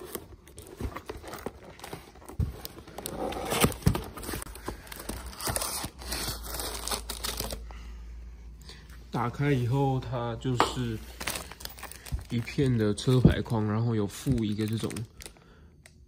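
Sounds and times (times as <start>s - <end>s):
cardboard packaging rustling: 0.0s - 7.7s, 10.8s - 15.3s.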